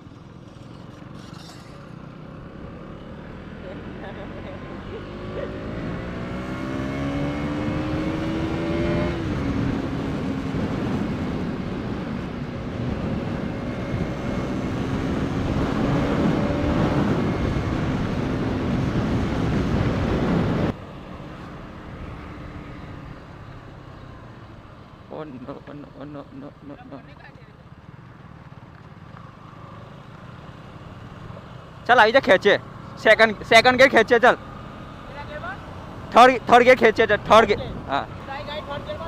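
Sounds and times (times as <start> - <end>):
motorcycle engine running: 0.0 - 20.4, 23.3 - 36.4
wind rush: 7.3 - 20.8.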